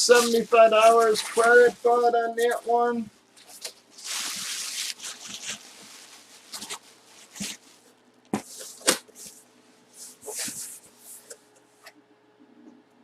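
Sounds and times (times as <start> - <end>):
rustling: 0.0 - 11.4.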